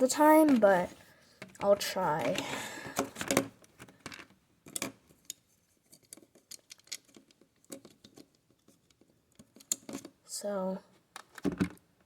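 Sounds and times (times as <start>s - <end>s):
plastic toy pieces clicking: 6.0s - 8.3s.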